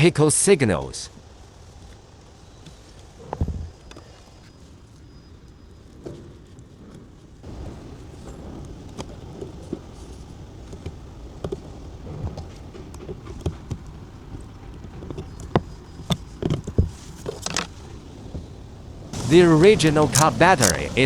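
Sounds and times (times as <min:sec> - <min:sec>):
clicks and knocks of hand tools: 0:14.7 - 0:17.8, 0:19.2 - 0:21.0.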